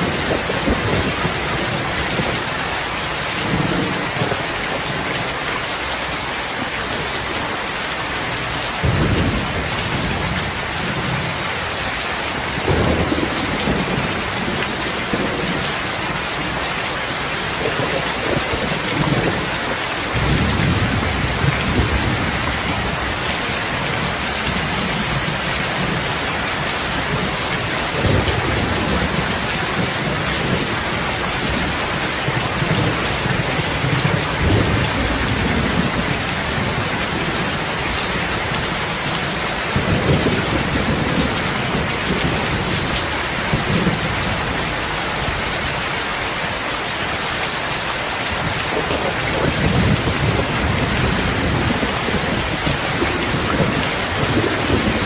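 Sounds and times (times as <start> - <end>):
low rolls of thunder: 0.0 - 2.5, 8.8 - 11.4, 12.3 - 16.6, 17.5 - 44.8, 48.7 - 55.0
heavy rain falling: 0.0 - 55.0.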